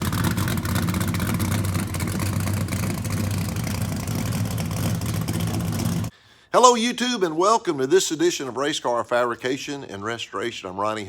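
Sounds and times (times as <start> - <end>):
race car engine idling: 0.0 - 6.1.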